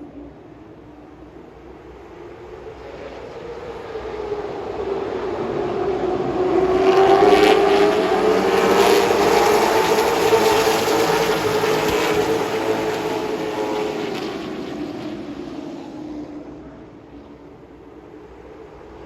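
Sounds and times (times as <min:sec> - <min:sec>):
race car engine revving high: 0:05.2 - 0:14.6.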